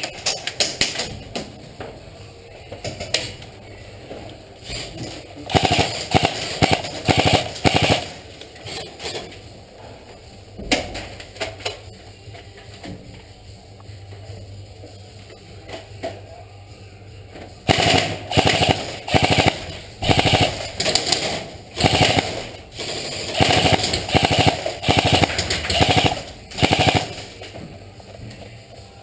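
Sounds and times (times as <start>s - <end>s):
airsoft gun bursts: 5.5s - 8.2s, 17.7s - 21.2s, 21.8s - 27.3s.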